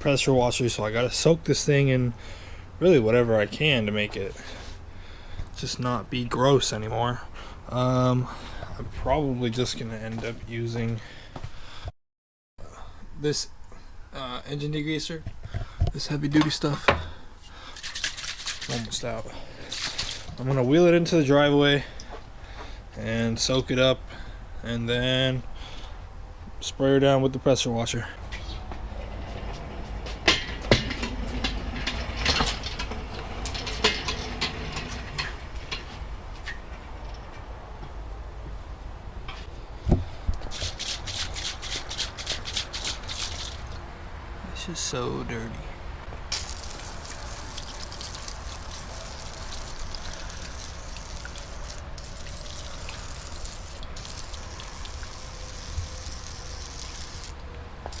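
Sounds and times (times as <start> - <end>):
clunks and rattles: 28.8 - 37.9
cart wheels rolling: 28.9 - 37.6.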